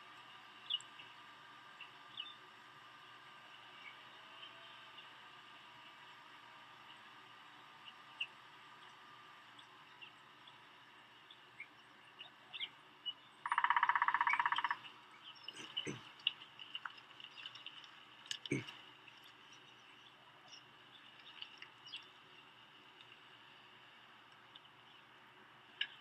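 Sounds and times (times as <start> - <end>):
small birds chirping: 0.6 - 1.1, 1.7 - 2.5, 7.8 - 26.0.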